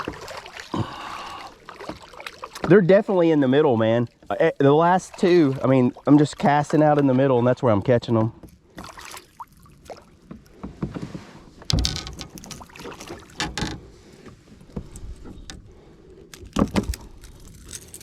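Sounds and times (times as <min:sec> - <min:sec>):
creek water splashing: 0:00.0 - 0:07.6, 0:08.7 - 0:10.3, 0:11.7 - 0:18.0.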